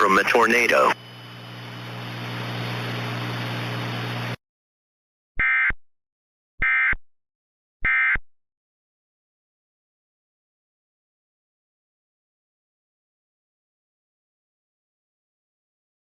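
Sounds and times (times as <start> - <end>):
static hiss with low hum: 0.0 - 4.4.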